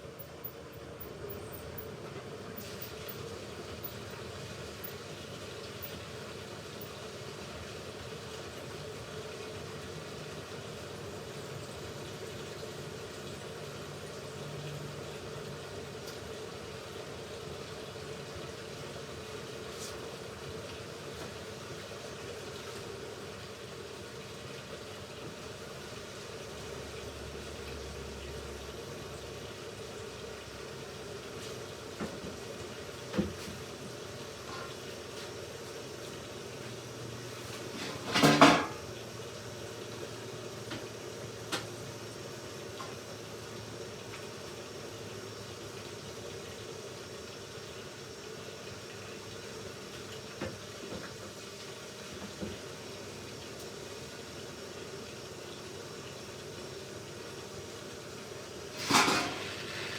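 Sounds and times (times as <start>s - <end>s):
washing machine drum churning water: 0.0s - 59.9s
loud clunk: 58.8s - 59.5s.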